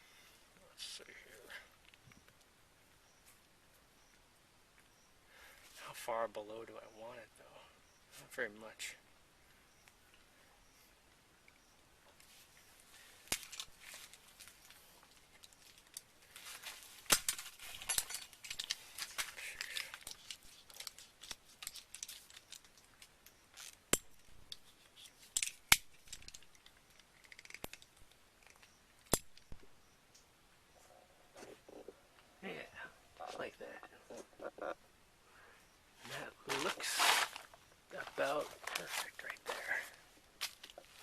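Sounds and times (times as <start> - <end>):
light rattling and rustling: 13.4 - 28.7
hand tool clicking and snipping metal: 17.1 - 22.8, 23.6 - 29.5.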